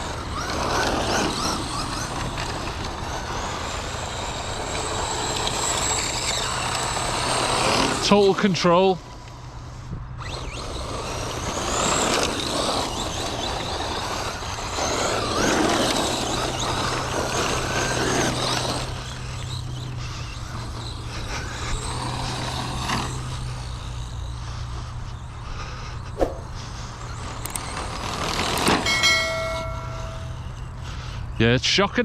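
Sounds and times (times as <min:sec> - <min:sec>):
electric motor whine: 0:00.0 - 0:31.4
tyres scrabbling on gravel: 0:10.2 - 0:31.1.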